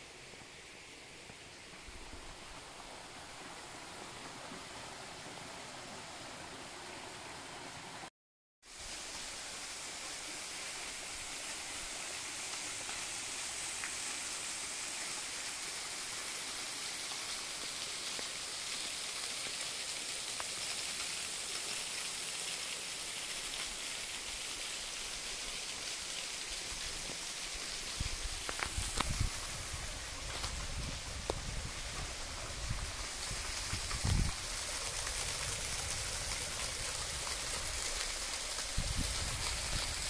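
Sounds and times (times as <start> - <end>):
rushing river water: 8.7 - 40.0.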